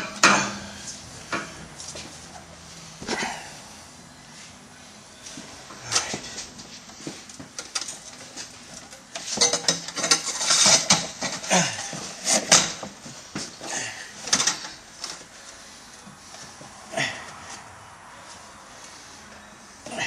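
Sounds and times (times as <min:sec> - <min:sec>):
metal pipes clanking and scraping: 0:00.0 - 0:01.7, 0:07.5 - 0:13.0, 0:13.6 - 0:15.2.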